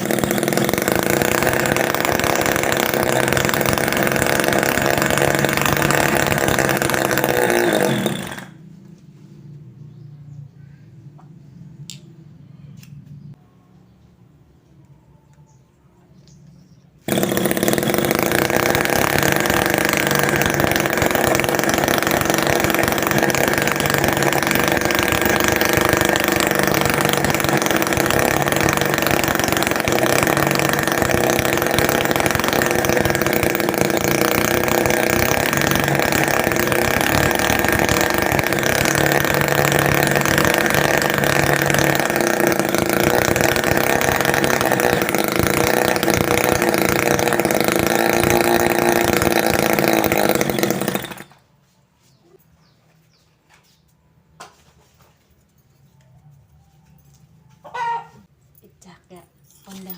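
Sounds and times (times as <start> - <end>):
small two-stroke engine running: 0.0 - 9.0, 17.0 - 51.4.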